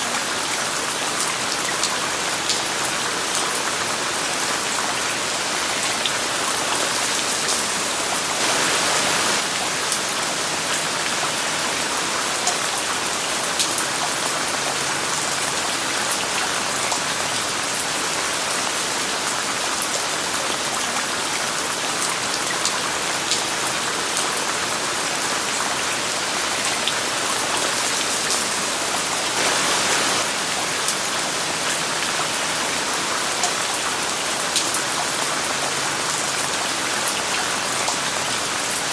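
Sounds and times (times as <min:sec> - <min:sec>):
steady rain hiss: 0:02.0 - 0:38.9.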